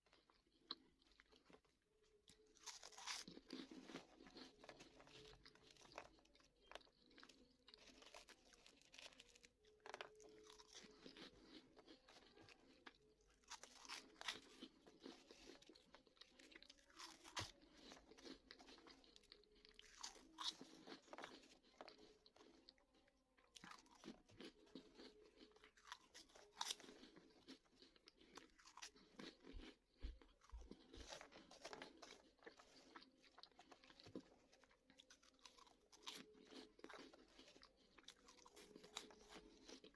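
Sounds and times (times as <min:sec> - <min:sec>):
person chewing: 0:00.0 - 0:39.9
quiet crunching of snacks: 0:00.0 - 0:39.9.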